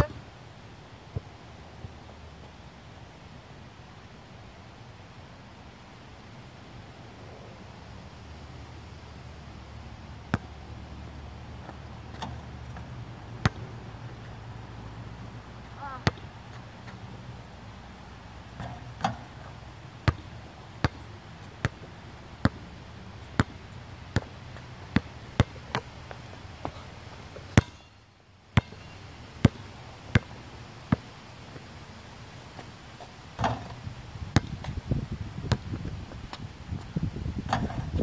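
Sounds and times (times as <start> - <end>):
basketball bouncing on pavement: 10.3 - 10.6, 11.6 - 13.7, 15.9 - 17.0, 18.6 - 21.0, 21.6 - 22.6, 23.2 - 27.9, 28.6 - 31.1, 33.4 - 38.0.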